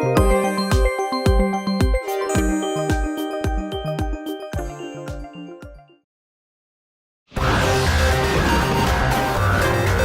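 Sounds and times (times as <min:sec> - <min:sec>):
electronic music: 0:00.0 - 0:05.8, 0:07.4 - 0:10.0
kick drum beat: 0:00.2 - 0:05.8.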